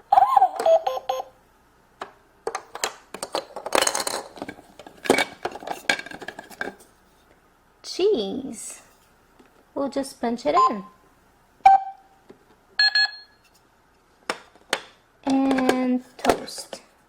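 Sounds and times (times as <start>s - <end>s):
toy cash register electronic tones: 0.2s - 1.3s, 12.8s - 13.4s
plastic toy pieces clattering: 2.5s - 6.7s.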